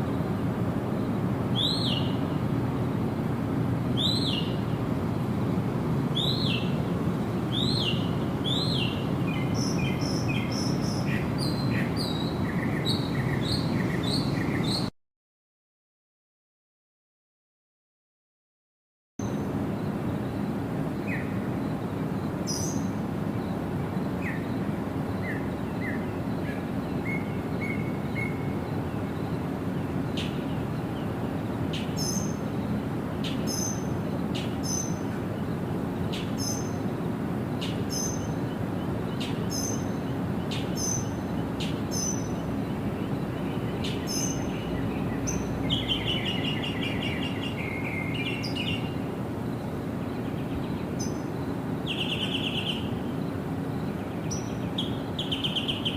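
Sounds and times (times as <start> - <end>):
wild birds calling: 0.0 - 14.9, 19.2 - 55.9.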